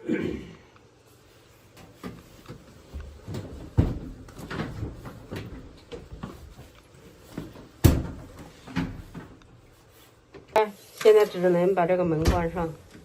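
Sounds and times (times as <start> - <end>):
washing machine knocking in cabinet: 7.8 - 9.0.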